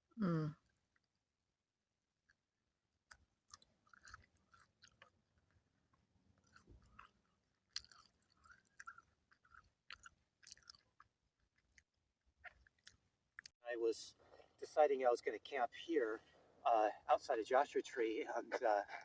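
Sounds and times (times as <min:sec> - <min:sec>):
person chewing: 0:03.1 - 0:13.5.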